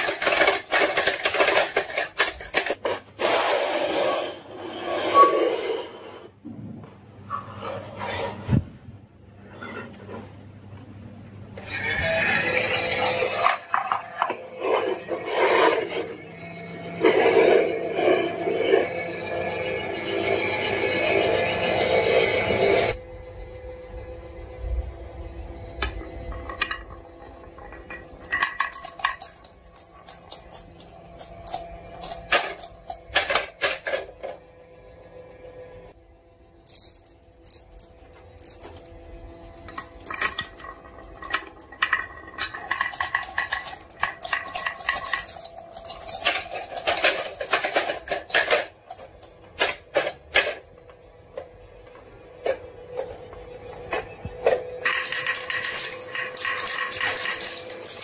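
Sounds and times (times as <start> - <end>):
marbles rolling on wooden run: 25.8 - 34.3, 39.7 - 50.6, 54.8 - 58.0.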